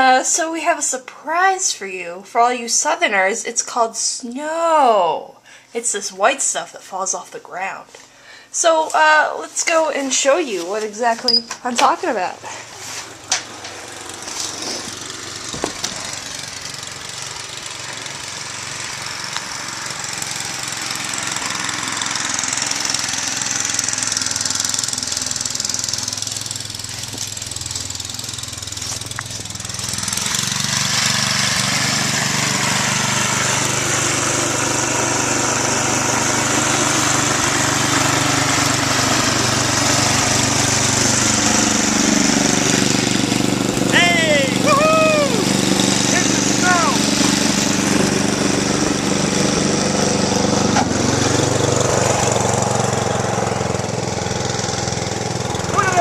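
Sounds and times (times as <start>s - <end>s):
snowblower engine running: 12.4s - 56.0s.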